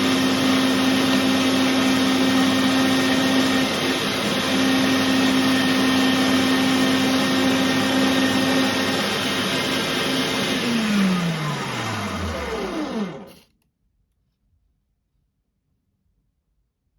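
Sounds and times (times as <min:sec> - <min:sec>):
meat grinder motor running: 0:00.0 - 0:13.4.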